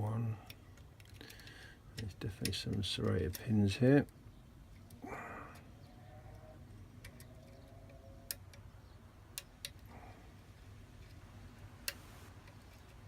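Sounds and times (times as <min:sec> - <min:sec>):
lock pick clicking pins: 0:00.4 - 0:10.0.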